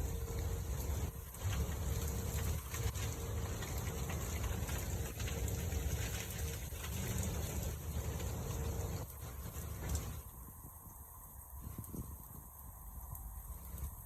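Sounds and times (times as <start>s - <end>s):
faint steady hum: 0.0s - 14.0s
wind buffeting microphone: 9.0s - 14.0s.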